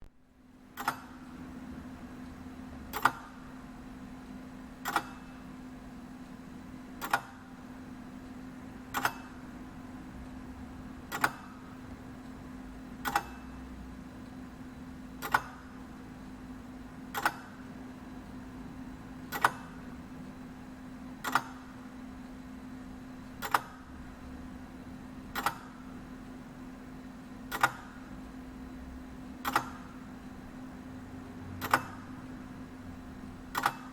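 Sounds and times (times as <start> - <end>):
steady low hum: 0.0 - 33.9
clock escapement ticking: 13.0 - 13.4.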